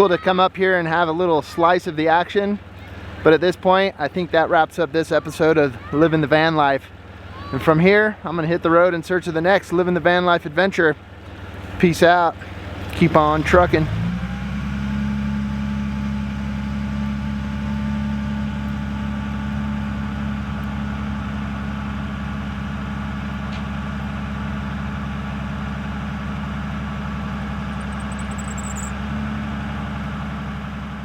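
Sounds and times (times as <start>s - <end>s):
van engine humming: 11.3s - 30.1s.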